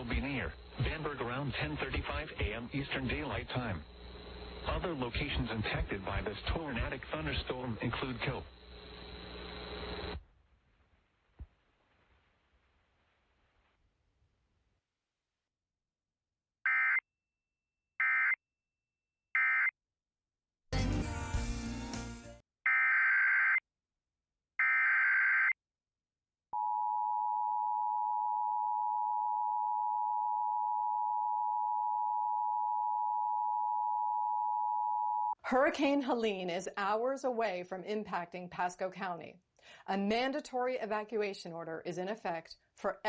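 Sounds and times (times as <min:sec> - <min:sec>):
buzzy data bursts: 0:00.0 - 0:10.2.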